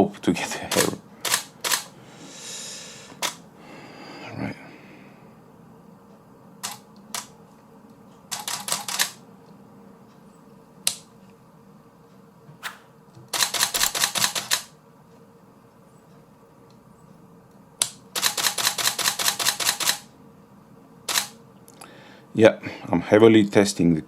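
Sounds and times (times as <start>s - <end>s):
camera shutter firing: 12.6s - 14.7s, 21.1s - 21.4s.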